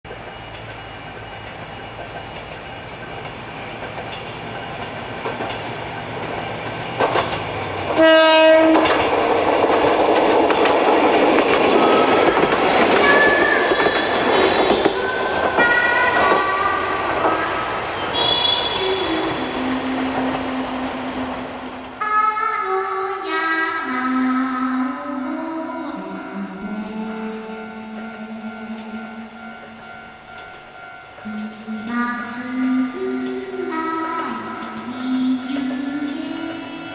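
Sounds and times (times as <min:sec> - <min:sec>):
diesel railcar rumbling past: 0:00.1 - 0:22.0
train horn blast: 0:08.0 - 0:09.0, 0:13.1 - 0:15.6, 0:18.0 - 0:19.6.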